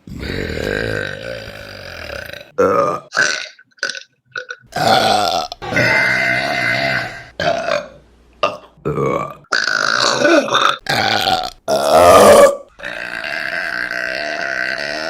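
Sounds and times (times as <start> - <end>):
woman burping loudly: 4.7 - 15.0.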